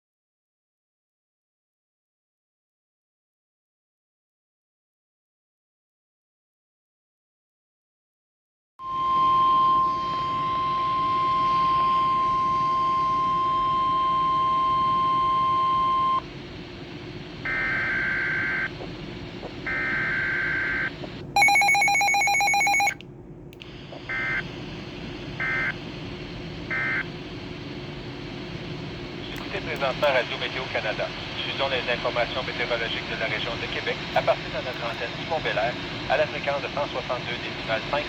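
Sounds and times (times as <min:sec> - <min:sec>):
steady warning alarm tone: 0:08.8 - 0:16.2, 0:17.4 - 0:18.8, 0:19.6 - 0:23.0, 0:24.1 - 0:24.5, 0:25.4 - 0:25.8, 0:26.7 - 0:27.1.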